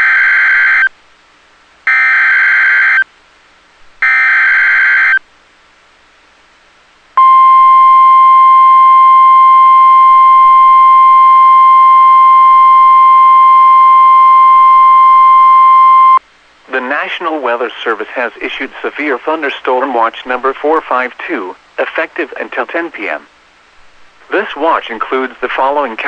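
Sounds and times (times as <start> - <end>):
steady warning alarm tone: 1.9 - 3.0, 4.0 - 5.2, 7.2 - 16.2.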